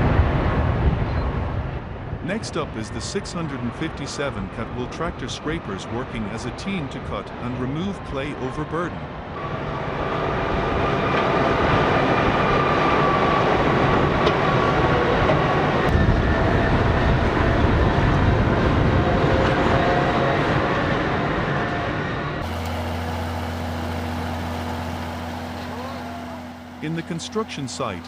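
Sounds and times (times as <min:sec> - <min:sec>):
diesel engines under load: 0:22.4 - 0:28.0.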